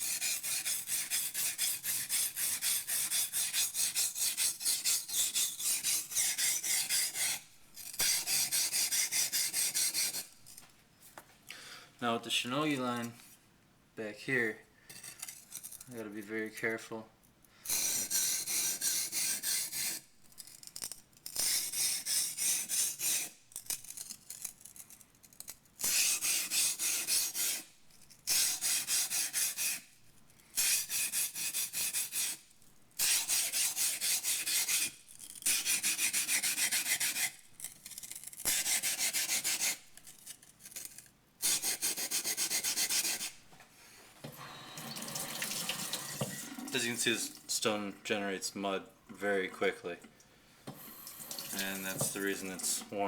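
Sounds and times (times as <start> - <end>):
knife grinding on a waterstone: 0.0 - 10.4, 14.9 - 15.8, 17.7 - 20.0, 25.8 - 27.6, 28.3 - 29.8, 33.0 - 43.3, 44.8 - 47.2, 50.7 - 52.9.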